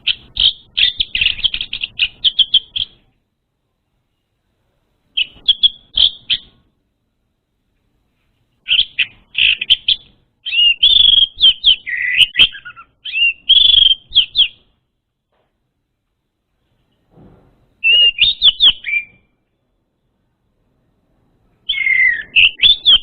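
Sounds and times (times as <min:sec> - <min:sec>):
bird chirping and whistling: 0:00.0 - 0:03.0, 0:05.2 - 0:06.6, 0:08.7 - 0:14.6, 0:17.8 - 0:19.3, 0:21.6 - 0:23.0.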